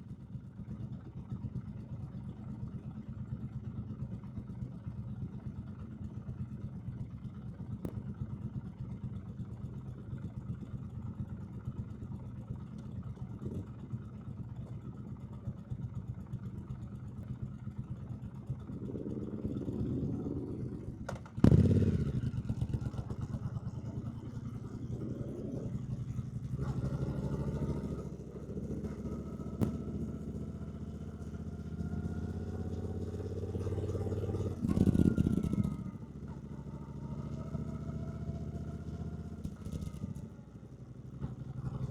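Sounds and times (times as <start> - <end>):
motorcycle engine revving: 17.1 - 41.9.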